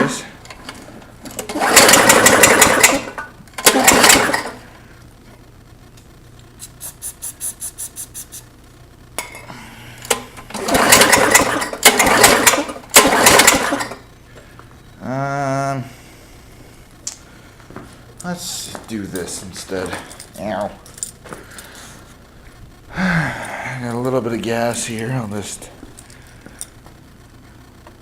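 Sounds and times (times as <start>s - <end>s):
lawn mower engine cranking: 0.4s - 4.6s, 10.1s - 14.0s.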